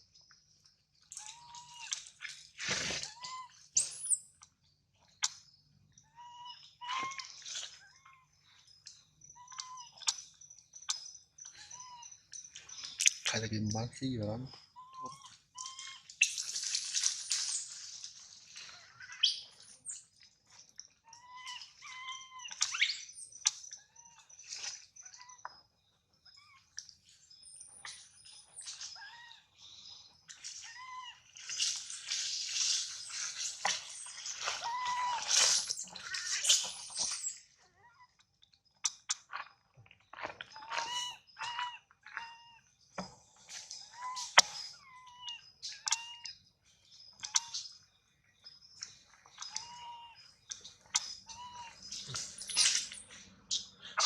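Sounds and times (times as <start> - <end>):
high animal chirps: 6.1 - 10.3, 14.8 - 17.8, 30.3 - 37.4, 40.5 - 42.6, 49.3 - 54.0.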